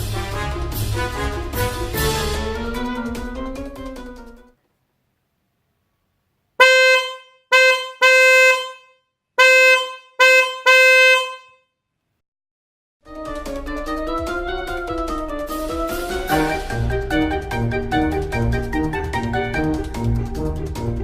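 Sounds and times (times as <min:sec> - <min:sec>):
car horn blasts: 0:06.6 - 0:11.8.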